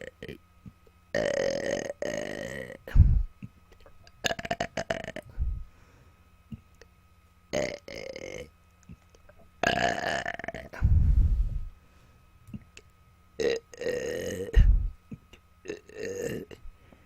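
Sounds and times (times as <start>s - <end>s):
woman burping: 13.4s - 16.6s.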